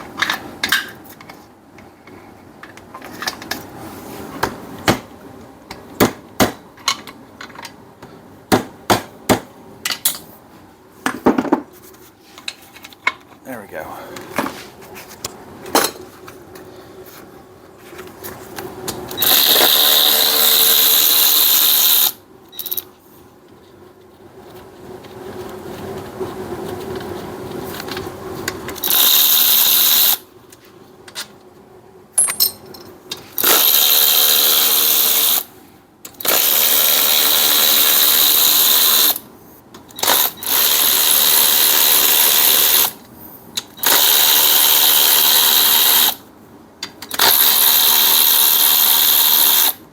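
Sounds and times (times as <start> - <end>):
power tool whining: 19.2 - 22.2.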